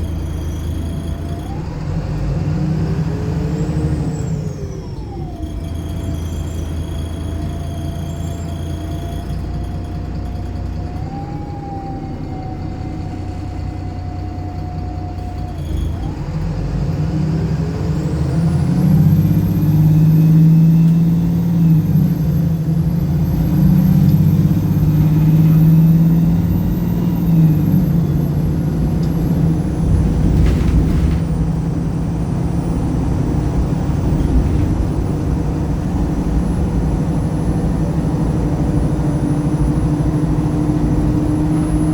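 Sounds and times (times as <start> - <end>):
bus engine humming: 0.0 - 41.9
high engine whine: 11.0 - 41.9.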